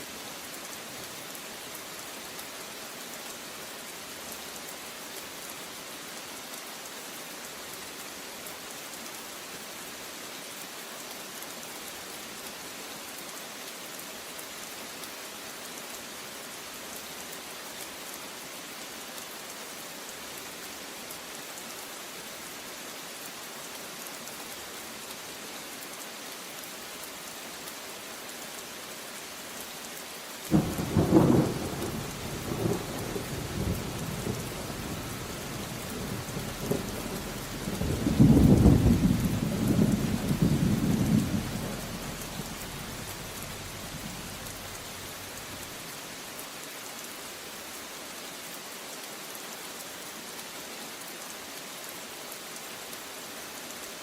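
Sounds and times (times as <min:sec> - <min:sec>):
heavy rain falling: 0:00.0 - 0:54.0
loud thunderclap: 0:36.0 - 0:44.8.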